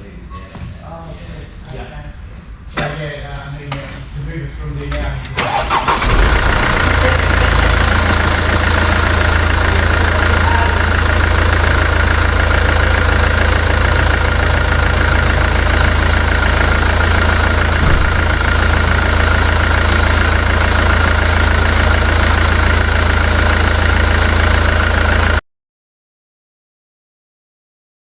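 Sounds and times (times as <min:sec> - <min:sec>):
diesel engine idling: 0:05.1 - 0:25.4.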